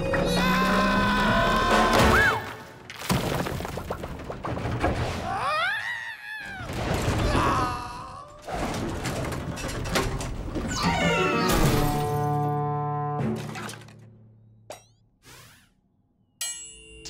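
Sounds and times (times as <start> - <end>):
clatter and thuds: 3.0 - 5.3, 6.7 - 7.4, 8.4 - 10.7.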